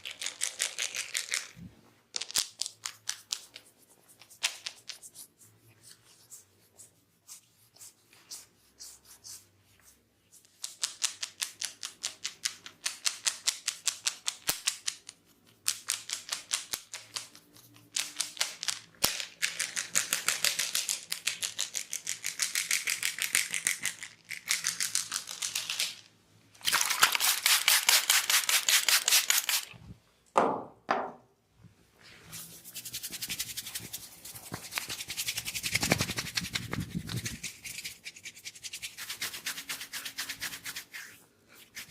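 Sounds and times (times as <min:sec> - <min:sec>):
hands rubbing hair and scalp: 0:32.1 - 0:41.9.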